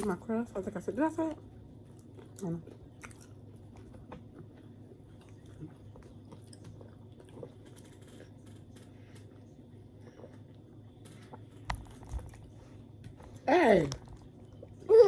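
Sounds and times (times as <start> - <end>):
faint low hum: 0.0 - 15.0
person chewing food: 1.8 - 14.8.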